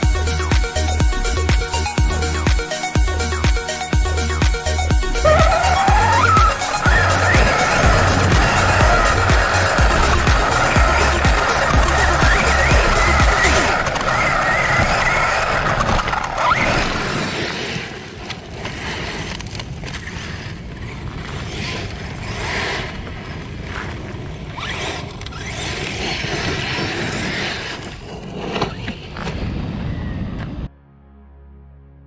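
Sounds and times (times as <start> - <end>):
tyres and drivetrain scraping rush: 0.0 - 30.6
electric motor whine: 4.1 - 19.5, 20.9 - 29.4.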